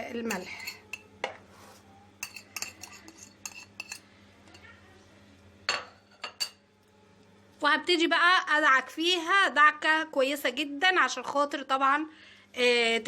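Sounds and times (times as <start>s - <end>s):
spoon clinking against dishes: 0.3s - 1.1s, 2.2s - 4.7s, 5.7s - 6.6s.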